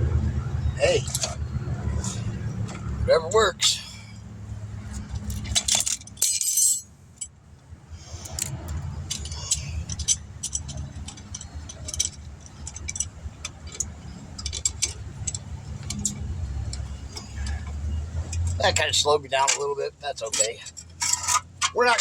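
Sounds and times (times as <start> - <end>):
metal parts jingling: 0.4 - 4.0, 4.7 - 7.4, 8.1 - 22.0
rustling clatter: 4.8 - 7.3, 8.0 - 22.0.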